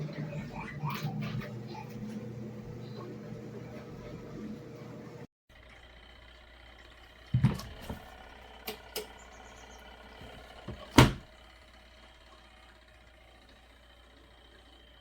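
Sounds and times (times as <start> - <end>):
faint steady hum: 0.0 - 5.3
hard objects knocking and clunking: 7.4 - 8.0.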